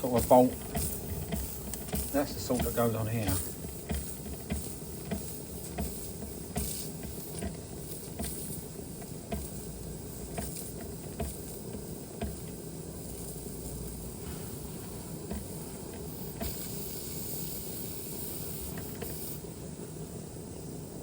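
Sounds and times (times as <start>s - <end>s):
light clicks and knocks: 0.0s - 13.6s, 14.2s - 16.8s
toy steam engine hissing and bubbling: 0.0s - 21.0s.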